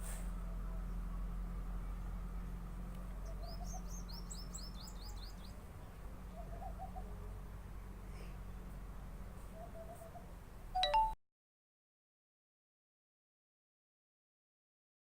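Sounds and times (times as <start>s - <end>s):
small bird chirping: 3.0s - 7.1s.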